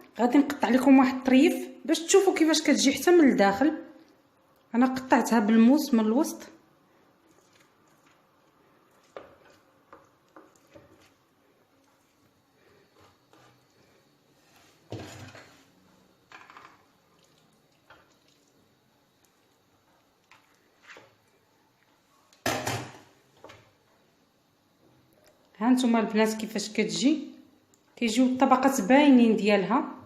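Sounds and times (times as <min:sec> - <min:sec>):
metal utensils scraping baking dish: 0:14.8 - 0:15.7.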